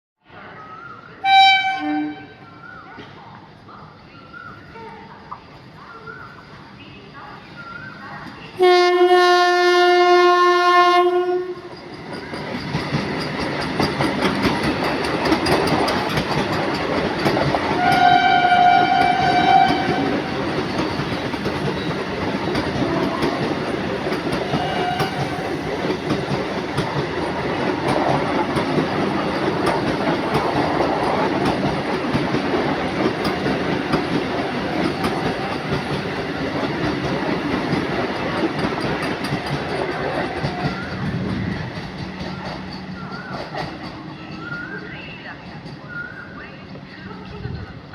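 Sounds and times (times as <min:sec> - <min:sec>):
train wheels rumbling on track: 0:00.3 - 0:47.9
train horn blast: 0:01.2 - 0:02.4, 0:08.6 - 0:11.7, 0:17.7 - 0:20.4, 0:24.3 - 0:25.5.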